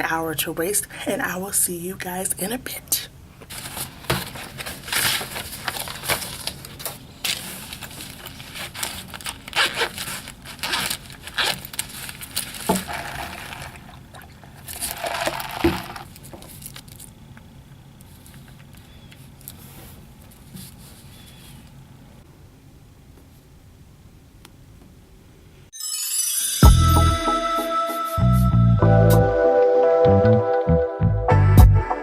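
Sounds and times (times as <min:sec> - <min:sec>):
rustling and scraping of handled objects: 0:03.4 - 0:17.2, 0:18.0 - 0:21.8.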